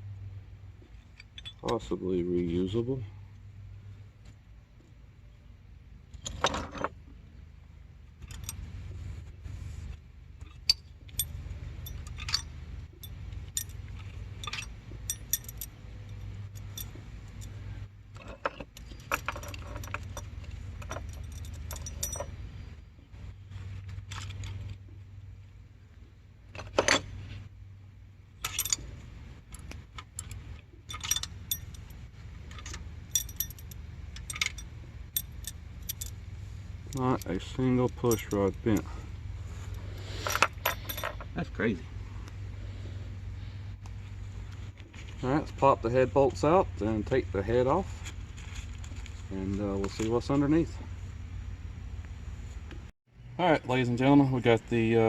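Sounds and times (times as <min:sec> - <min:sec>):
steady low hum: 0:00.0 - 0:06.3, 0:07.0 - 0:55.0
steel parts clinking and rattling: 0:00.8 - 0:01.8, 0:08.2 - 0:08.7, 0:10.4 - 0:22.4, 0:28.4 - 0:39.0, 0:39.6 - 0:41.4.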